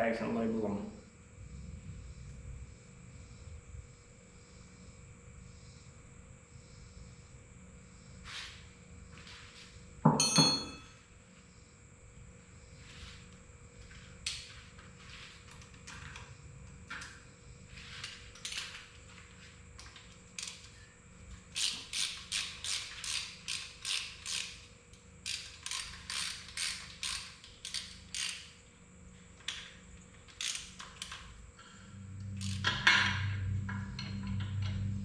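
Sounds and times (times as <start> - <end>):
ratchet wrench clicking: 20.4 - 20.7, 21.5 - 28.5, 30.3 - 31.2, 32.4 - 32.7.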